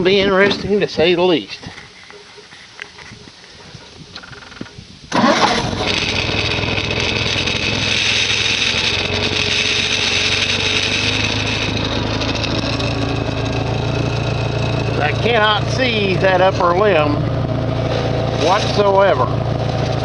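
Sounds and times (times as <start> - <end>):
skid steer engine starting and running: 5.1 - 20.0.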